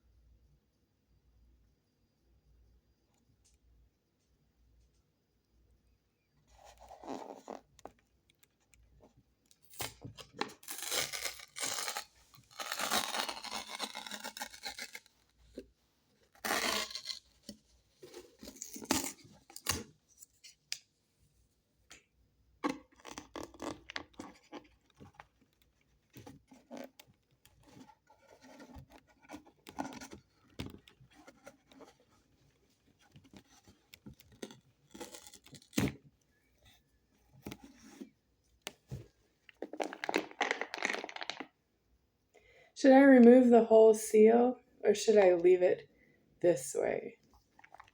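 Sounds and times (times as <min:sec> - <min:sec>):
paper seal tearing: 0:09.7 - 0:15.2, 0:16.4 - 0:17.4.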